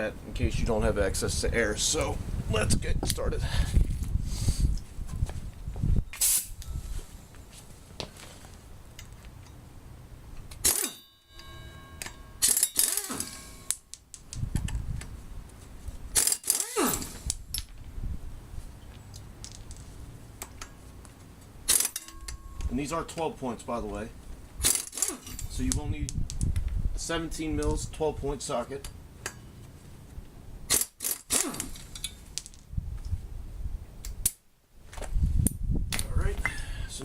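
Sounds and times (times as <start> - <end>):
air impact wrench bursts: 6.2 - 6.6, 12.4 - 13.7, 16.2 - 17.3, 24.6 - 25.4, 30.7 - 31.8
metal ringing: 10.6 - 13.7, 21.7 - 22.9
metallic clinks: 21.8 - 22.7.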